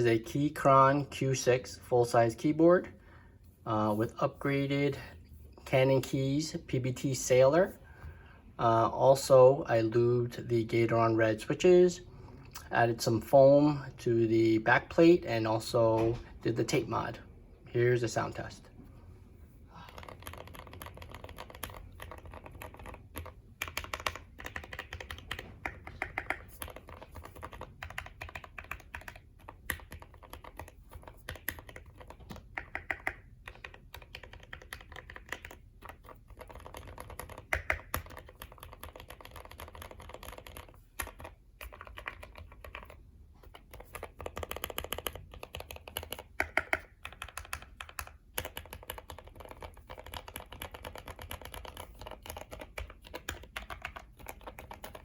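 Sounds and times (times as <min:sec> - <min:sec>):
typing on mechanical keyboard: 0:19.8 - 0:55.0.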